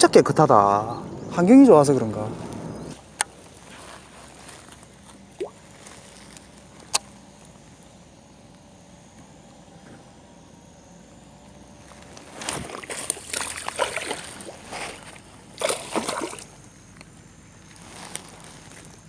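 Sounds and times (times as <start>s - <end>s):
water splashing and sloshing: 2.9s - 7.5s, 11.8s - 16.8s.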